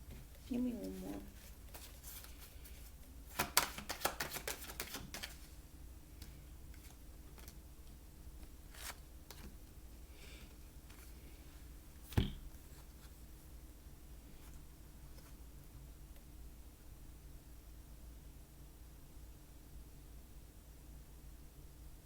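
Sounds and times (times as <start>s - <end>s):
cards being shuffled: 0.8s - 5.5s, 6.2s - 7.6s, 8.4s - 9.6s.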